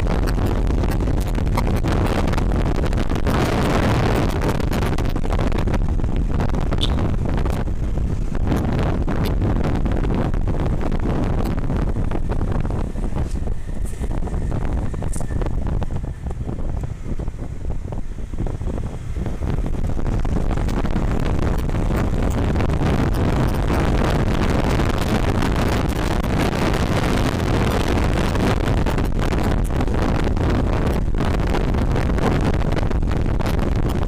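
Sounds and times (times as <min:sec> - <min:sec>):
motorcycle engine running: 0:00.0 - 0:34.0
wind rushing over microphone: 0:00.0 - 0:34.0.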